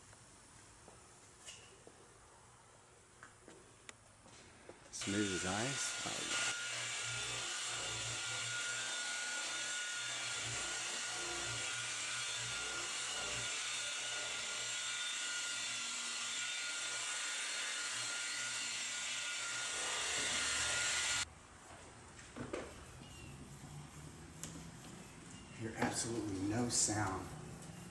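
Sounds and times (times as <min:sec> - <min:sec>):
electric buffer whirring: 0:05.0 - 0:21.3.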